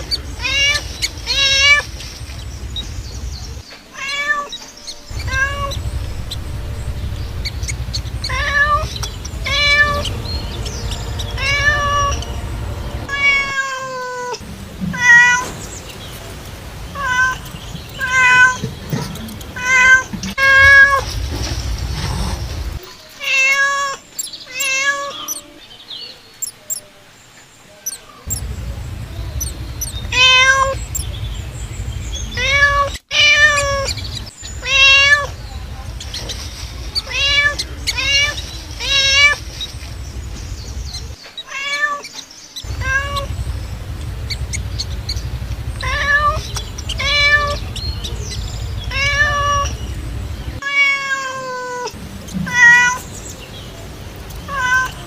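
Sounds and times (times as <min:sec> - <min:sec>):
low steady rumble: 0:00.0 - 0:03.6, 0:05.0 - 0:13.6, 0:20.3 - 0:22.8, 0:28.3 - 0:41.2, 0:42.6 - 0:50.6
cat meowing: 0:00.3 - 0:01.9, 0:03.9 - 0:06.4, 0:07.4 - 0:12.3, 0:13.0 - 0:15.5, 0:17.0 - 0:18.7, 0:29.9 - 0:31.0, 0:32.2 - 0:35.5, 0:36.9 - 0:39.5, 0:41.0 - 0:42.1, 0:42.7 - 0:43.3, 0:45.5 - 0:48.2, 0:48.8 - 0:49.8, 0:50.6 - 0:53.0, 0:54.5 - 0:55.0.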